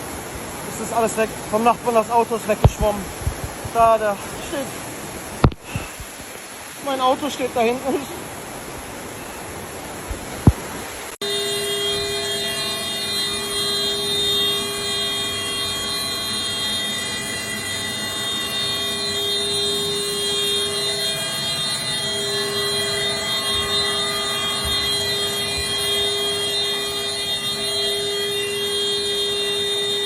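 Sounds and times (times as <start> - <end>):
continuous warning tone: 0.0 - 30.0
steady even noise: 11.2 - 30.0.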